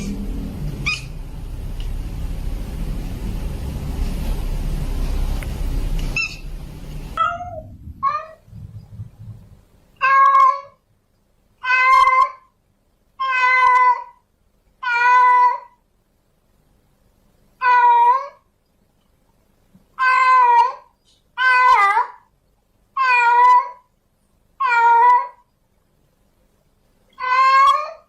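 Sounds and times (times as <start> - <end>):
cat meowing: 7.2 - 8.5, 10.0 - 10.8, 11.6 - 12.5, 13.2 - 14.2, 14.8 - 15.8, 17.6 - 18.4, 20.0 - 22.2, 23.0 - 23.9, 24.6 - 25.4, 27.2 - 28.0.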